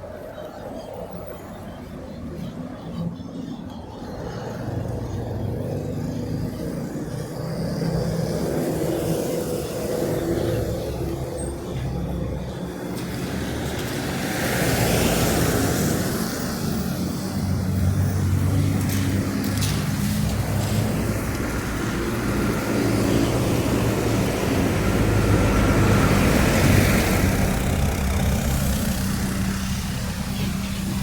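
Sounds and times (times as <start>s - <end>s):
vehicle engines running: 0.0s - 31.0s
vehicle passing: 4.1s - 31.0s.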